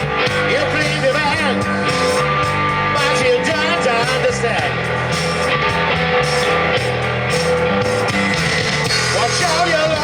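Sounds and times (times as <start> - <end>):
bass guitar: 0.0 - 10.0
electric guitar: 0.0 - 10.0.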